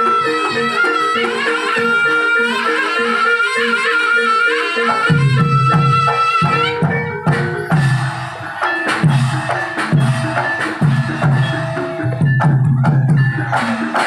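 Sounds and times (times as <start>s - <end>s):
shrill reed wind instrument melody: 0.0s - 12.4s.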